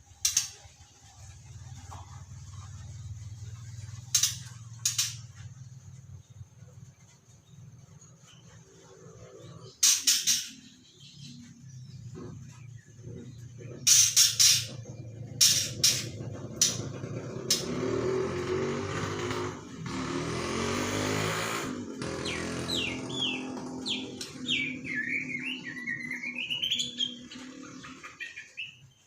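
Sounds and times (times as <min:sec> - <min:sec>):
hissy bird rasp: 0:03.4 - 0:05.8, 0:06.8 - 0:20.0
bird giving harsh rasping notes: 0:13.8 - 0:28.6.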